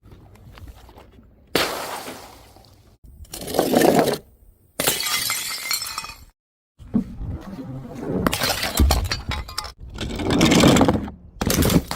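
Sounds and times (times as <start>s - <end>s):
glass bottles shattering: 4.8s - 6.3s.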